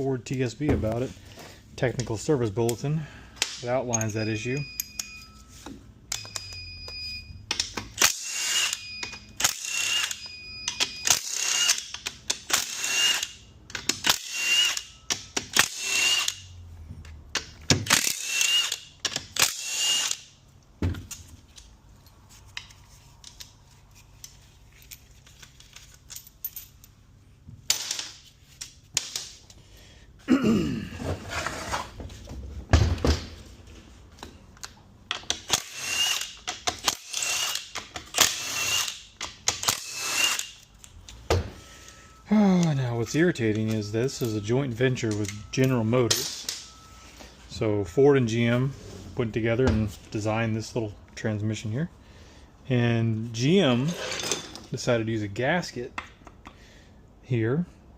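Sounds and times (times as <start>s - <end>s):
metal parts clunking: 20.9s - 27.0s, 53.8s - 54.8s.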